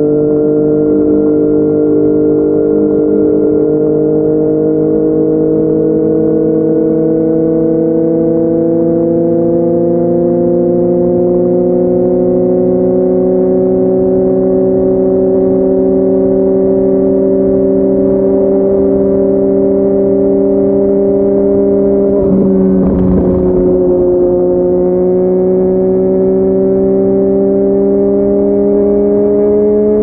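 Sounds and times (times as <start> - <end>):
motorcycle engine cruising: 19.7 - 30.0.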